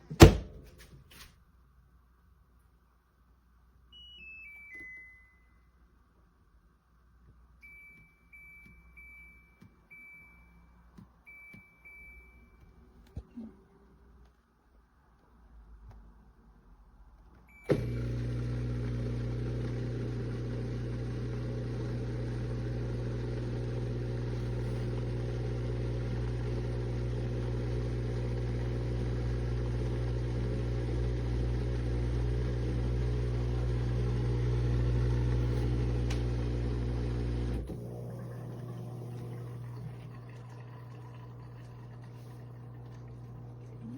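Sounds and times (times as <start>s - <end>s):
dishwasher pump humming: 17.7s - 43.9s.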